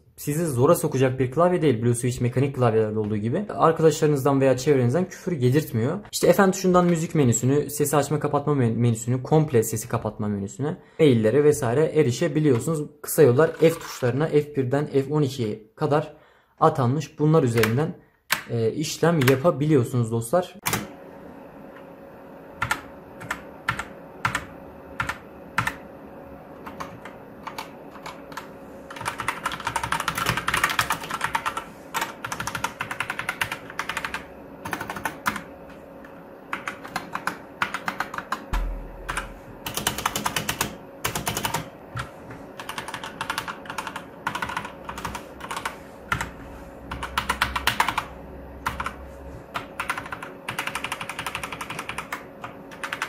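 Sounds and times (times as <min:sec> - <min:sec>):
mechanical keyboard typing: 0:13.3 - 0:13.9, 0:22.6 - 0:25.8, 0:26.6 - 0:35.5, 0:36.5 - 0:38.5, 0:39.1 - 0:49.0, 0:49.6 - 0:53.0.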